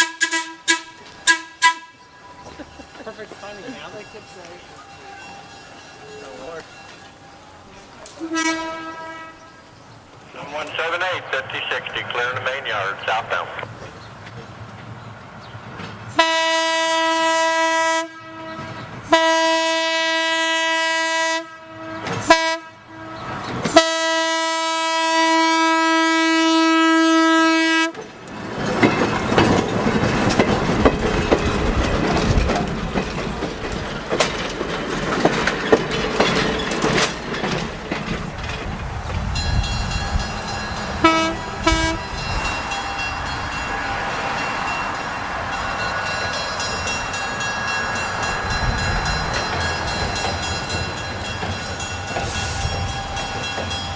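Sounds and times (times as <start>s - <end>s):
train air horn blasts: 0.0s - 2.3s, 8.2s - 9.6s, 16.2s - 28.0s, 41.0s - 42.3s
train wheels clattering and rumbling: 0.0s - 7.2s, 13.7s - 16.2s, 21.9s - 22.4s, 23.1s - 24.0s, 27.7s - 53.9s.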